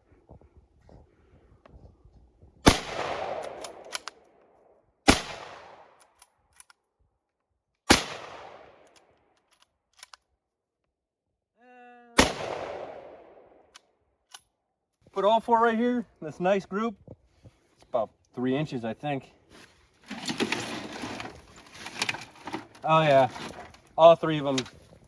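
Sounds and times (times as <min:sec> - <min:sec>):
rifle shots echoing: 0:02.6 - 0:04.2, 0:05.0 - 0:06.0, 0:07.9 - 0:08.9, 0:12.2 - 0:13.6.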